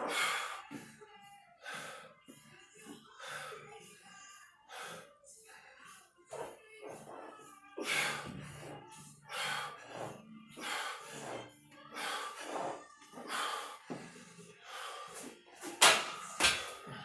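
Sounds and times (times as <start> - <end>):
forceful rhythmic breathing: 4.7 - 17.0.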